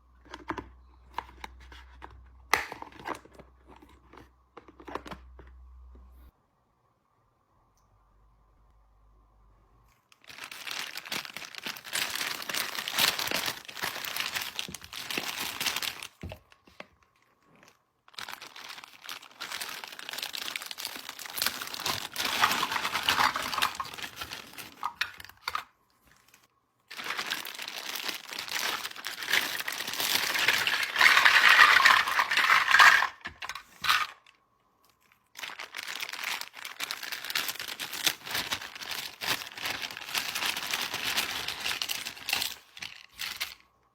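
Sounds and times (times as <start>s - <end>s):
packaging crinkling and tearing: 10.0s - 43.7s.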